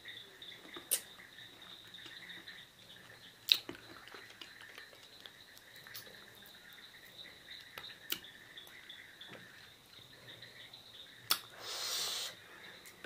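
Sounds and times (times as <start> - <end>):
crickets chirping: 0.0 - 13.0
short hissing rustle: 11.5 - 12.4.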